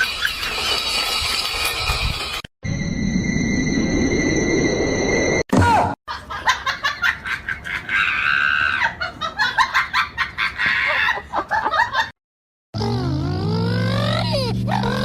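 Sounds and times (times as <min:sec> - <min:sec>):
person laughing hard: 0:06.1 - 0:12.1.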